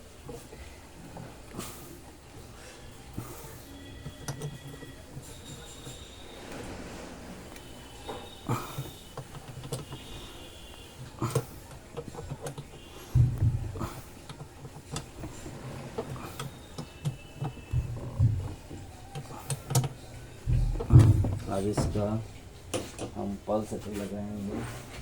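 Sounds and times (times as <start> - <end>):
dull thumps: 4.0 - 23.2.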